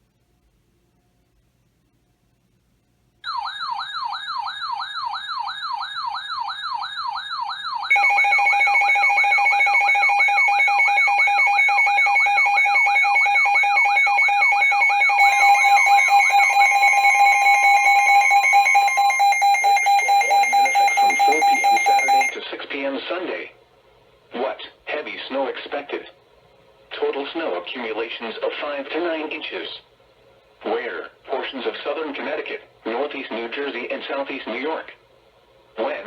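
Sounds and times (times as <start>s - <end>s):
warbling electronic siren tone: 3.3s - 22.4s
steady alert tone: 15.1s - 22.4s.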